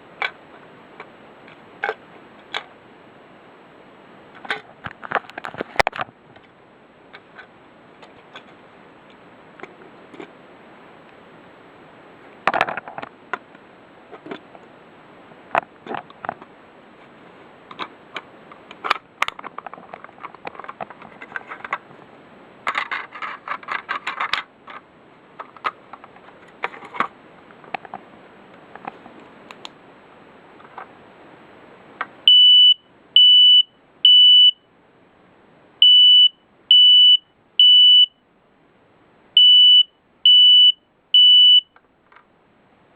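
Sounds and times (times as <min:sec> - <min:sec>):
smoke detector alarm beeps: 0:32.3 - 0:34.7, 0:35.8 - 0:38.2, 0:39.4 - 0:41.7.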